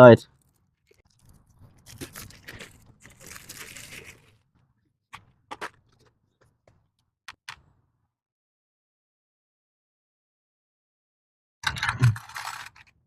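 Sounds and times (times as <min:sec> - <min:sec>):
packaging rustling and crinkling: 0:00.4 - 0:04.4, 0:12.1 - 0:12.9.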